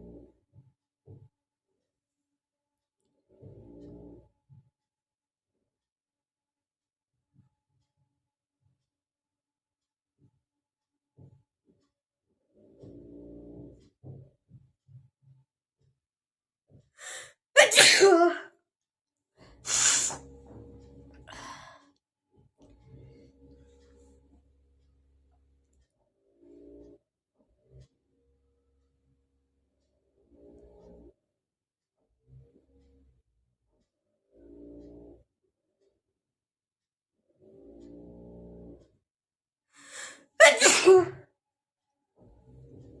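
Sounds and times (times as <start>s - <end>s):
person sneezing: 17.1s - 18.4s, 19.7s - 20.2s, 40.0s - 41.2s
breath intake: 19.6s - 20.3s.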